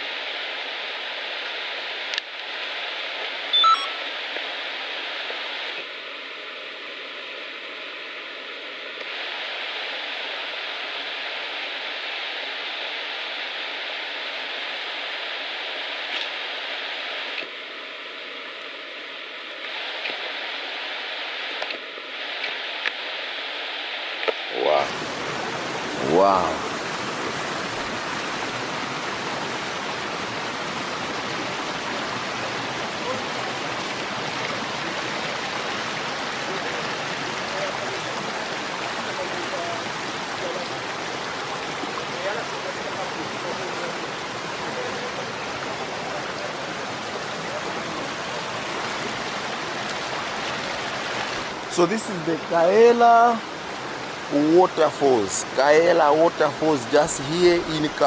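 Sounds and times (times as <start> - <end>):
waterfall pouring over rocks: 24.2 - 58.0.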